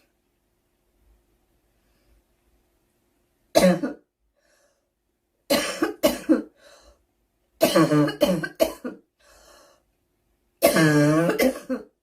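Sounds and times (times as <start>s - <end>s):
girl coughing: 3.6s - 4.0s, 5.5s - 6.5s, 7.6s - 9.0s, 10.6s - 12.0s.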